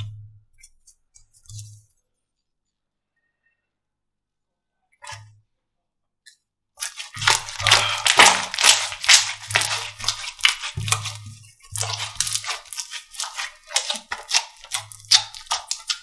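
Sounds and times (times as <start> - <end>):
slime crackling and popping: 6.8 - 16.0.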